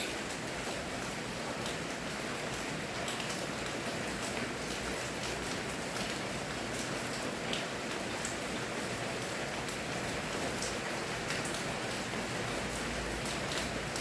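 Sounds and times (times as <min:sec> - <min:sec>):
raindrops ticking on surface: 0:00.0 - 0:14.0
steady rain falling: 0:00.0 - 0:14.0.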